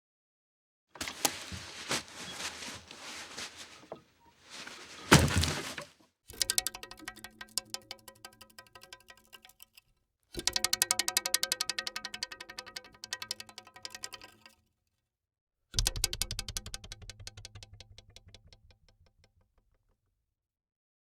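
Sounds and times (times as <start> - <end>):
scraping and rustling: 1.0 - 5.9
heavy thunk: 1.1 - 5.9.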